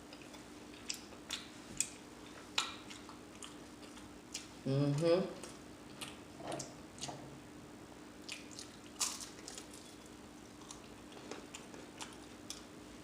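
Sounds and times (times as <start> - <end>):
chewing and mouth smacking: 0.0 - 4.6, 5.4 - 7.2, 8.2 - 12.8
faint steady hum: 0.0 - 13.0.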